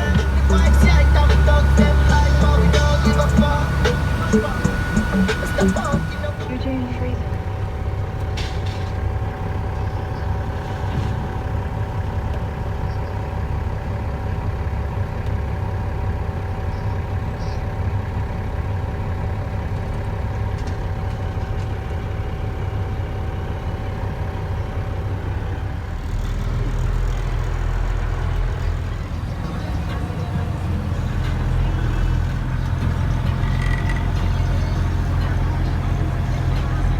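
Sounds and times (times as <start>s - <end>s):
thin steady whine: 0.0s - 7.8s
diesel truck engine rumble: 0.0s - 36.9s
road noise: 0.0s - 36.9s.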